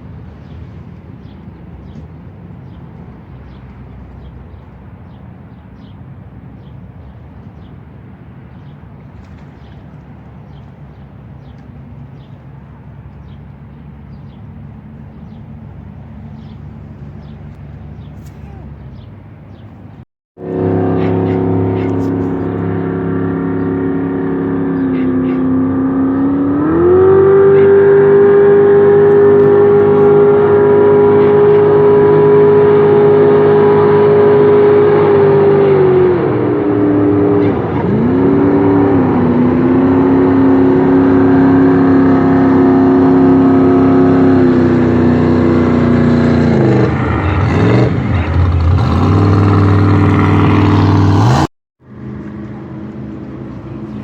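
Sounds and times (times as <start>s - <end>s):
jet boat engine revving: 20.4s - 54.0s.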